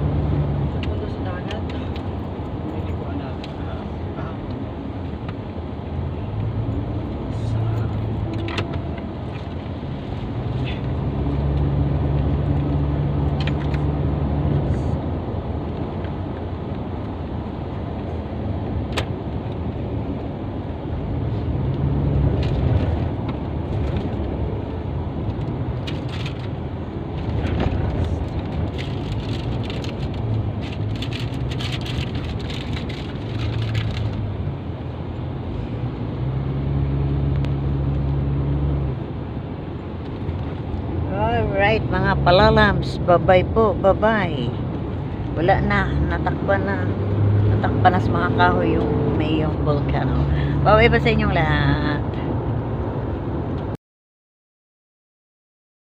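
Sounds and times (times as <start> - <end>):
road noise: 0.0 - 53.8
vehicle engine hum: 0.0 - 53.8
rattles and clicks: 12.4 - 13.9, 25.2 - 34.3.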